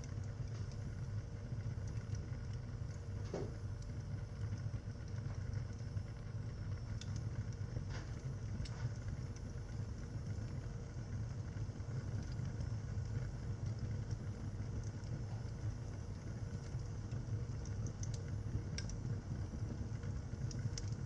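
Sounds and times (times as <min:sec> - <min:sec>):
fire crackling and popping: 0:00.0 - 0:21.0.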